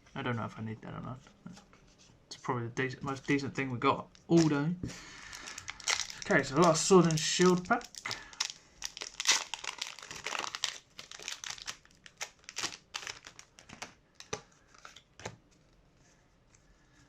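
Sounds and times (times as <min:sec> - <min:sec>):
foil wrapper crinkling: 0:04.1 - 0:15.0.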